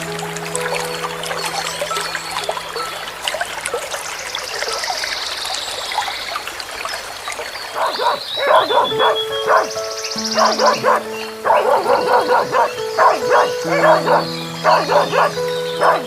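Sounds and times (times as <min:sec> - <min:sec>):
background music with held notes: 0:00.0 - 0:04.5, 0:08.8 - 0:16.0.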